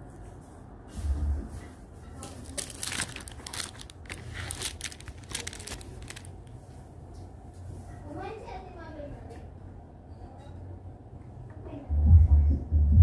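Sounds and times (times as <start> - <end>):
rustling and crackling: 1.6 - 7.7
steady low hum: 10.8 - 13.0.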